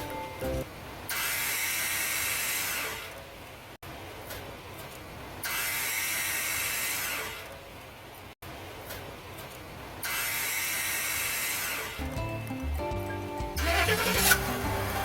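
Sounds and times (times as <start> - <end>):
starter motor grinding and whirring: 13.6 - 15.0.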